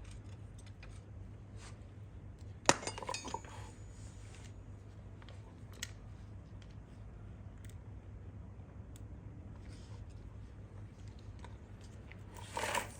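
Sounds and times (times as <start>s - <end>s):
steady low hum: 0.0s - 12.9s
metal objects clinking: 2.7s - 3.7s.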